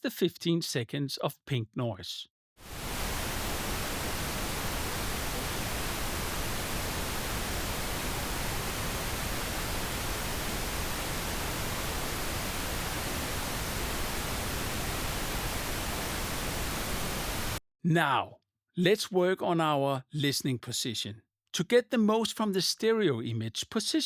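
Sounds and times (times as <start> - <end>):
pink noise hiss: 2.6 - 17.6.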